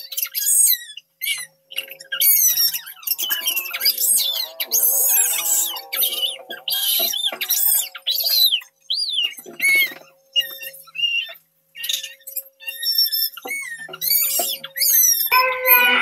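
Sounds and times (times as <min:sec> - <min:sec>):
baby crying and screaming: 0:03.1 - 0:07.9, 0:15.3 - 0:16.0.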